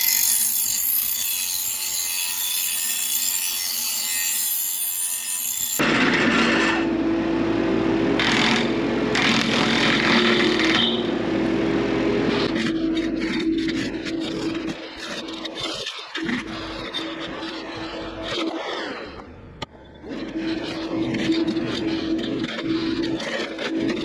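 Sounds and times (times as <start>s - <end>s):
power tool grinding blades: 0.0s - 15.0s
low hum: 5.8s - 14.7s.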